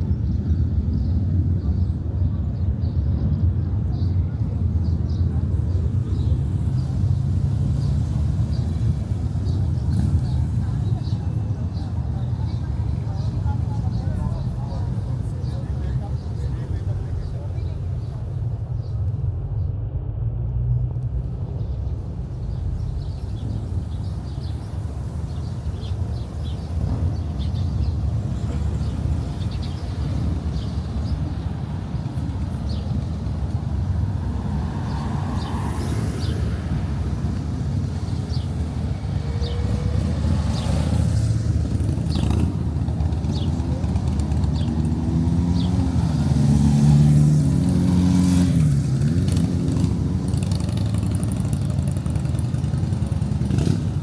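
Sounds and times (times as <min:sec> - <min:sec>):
low traffic rumble: 0:00.0 - 0:54.0
vehicle engine passing: 0:20.7 - 0:54.0.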